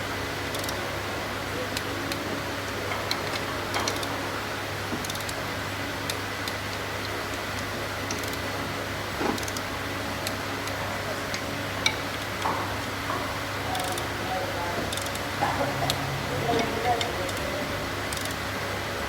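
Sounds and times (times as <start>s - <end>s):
metal tools clicking and tapping: 2.8s - 4.2s, 6.1s - 8.5s, 9.3s - 17.5s.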